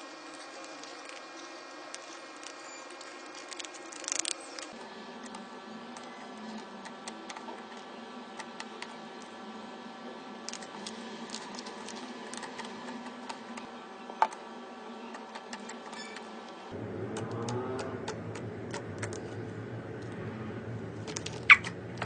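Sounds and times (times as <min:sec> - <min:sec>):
slime squishing by hand: 0:00.0 - 0:04.8.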